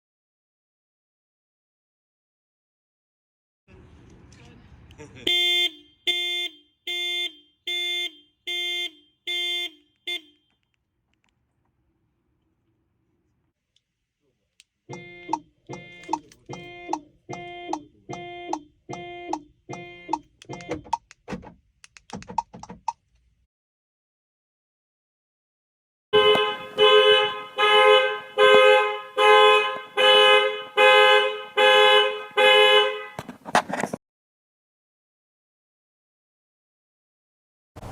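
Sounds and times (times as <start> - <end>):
car alarm buzzy beeps: 5.3 - 10.6, 14.9 - 21.1.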